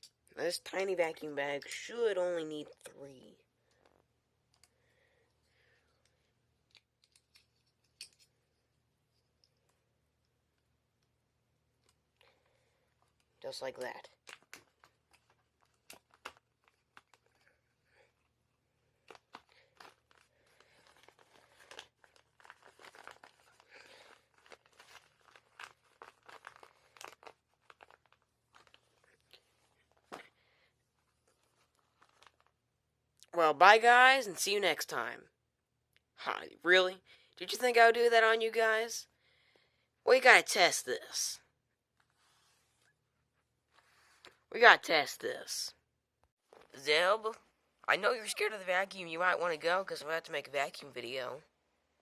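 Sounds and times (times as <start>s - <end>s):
paper rustling: 19.0s - 30.3s, 31.0s - 32.6s.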